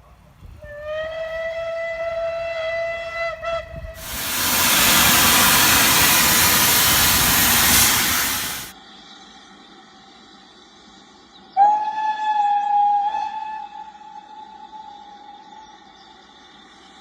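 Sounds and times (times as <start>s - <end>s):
steam locomotive whistle: 0.8s - 8.7s
steam hissing: 4.0s - 8.7s.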